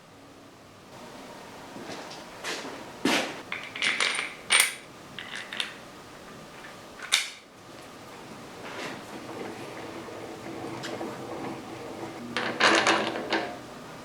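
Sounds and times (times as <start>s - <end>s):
metal tools clinking and knocking: 3.5s - 5.8s.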